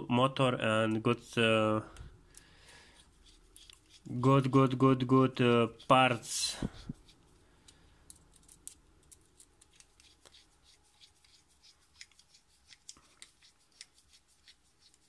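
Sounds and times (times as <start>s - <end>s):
toy parts clicking and rustling: 7.6s - 15.0s.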